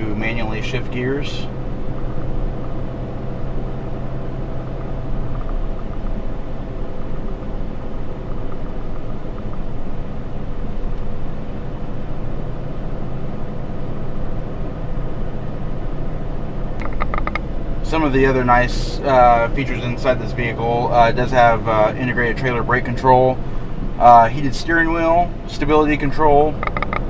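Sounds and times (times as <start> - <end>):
diesel engine drone: 0.0 - 27.0
road rumble: 0.0 - 27.0.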